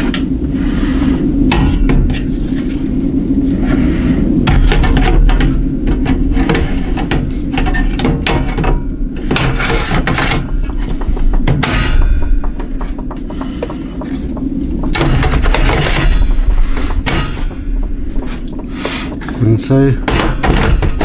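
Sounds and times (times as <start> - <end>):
low hum: 0.0 - 21.0
metal and plastic parts clattering: 3.6 - 21.0.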